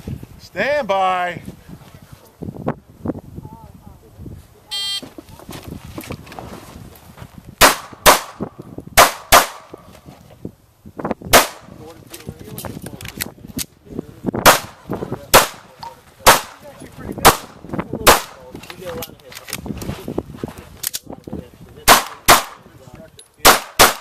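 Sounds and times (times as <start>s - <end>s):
pistol shots: 7.6s - 8.4s, 9.0s - 9.8s, 11.3s - 11.7s, 14.4s - 16.6s, 17.2s - 18.4s, 21.9s - 22.6s, 23.4s - 24.0s.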